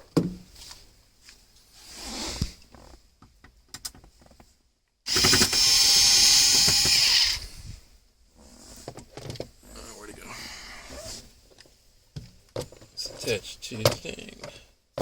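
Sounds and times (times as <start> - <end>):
power drill driver running: 5.1 - 7.5.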